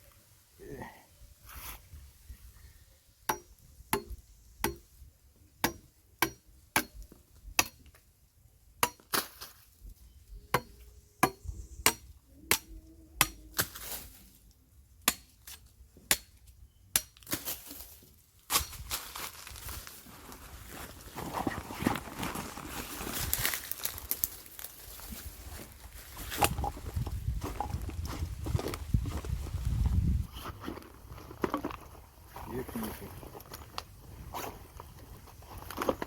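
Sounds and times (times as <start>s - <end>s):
blade chopping sugar cane: 5.6s - 7.0s, 8.8s - 9.4s, 15.0s - 16.3s.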